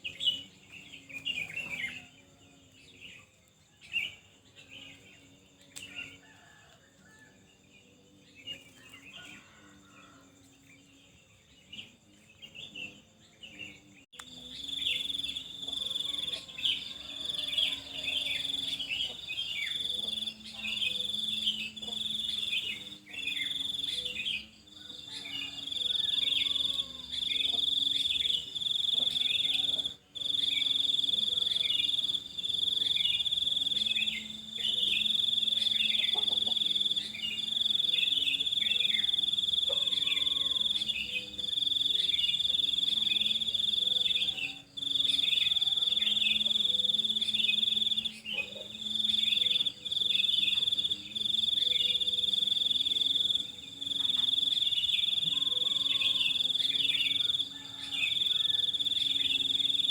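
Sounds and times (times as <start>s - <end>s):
high-pitched insect trill: 8.3s - 59.9s.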